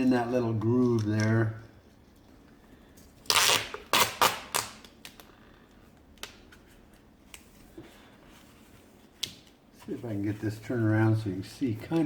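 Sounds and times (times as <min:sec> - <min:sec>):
duct tape pulled off roll: 0:03.2 - 0:05.2.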